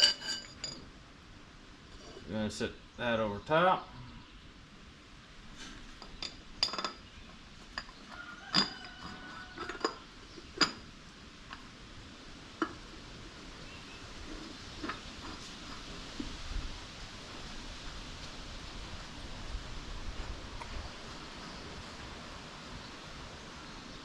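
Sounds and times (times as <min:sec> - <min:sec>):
metal clinks and clanks: 0:00.0 - 0:00.9, 0:06.0 - 0:07.0, 0:07.8 - 0:10.9.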